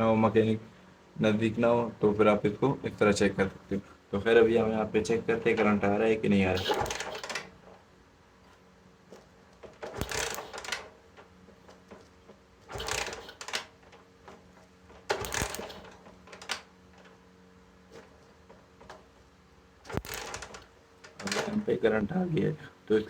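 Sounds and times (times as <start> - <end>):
faint steady hum: 0.0 - 23.0
mechanical clatter bursts: 6.5 - 7.8, 9.1 - 17.2, 19.8 - 21.7.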